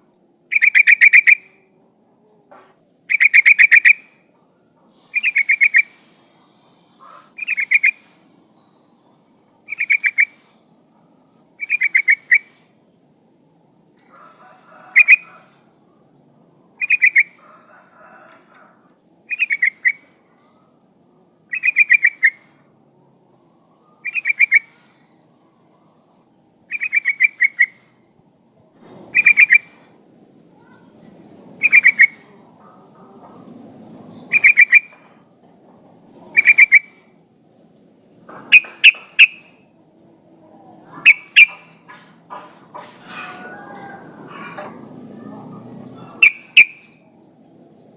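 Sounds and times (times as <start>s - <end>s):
bulbul calling: 0.5s - 1.6s, 3.0s - 4.2s, 5.0s - 6.2s, 6.9s - 8.2s, 9.7s - 10.5s, 11.6s - 12.6s, 14.9s - 15.3s, 16.8s - 17.4s, 19.2s - 22.6s, 23.4s - 28.2s, 29.0s - 29.9s, 31.6s - 35.2s, 36.0s - 37.1s, 38.0s - 39.6s, 40.8s - 42.9s, 43.9s - 47.1s.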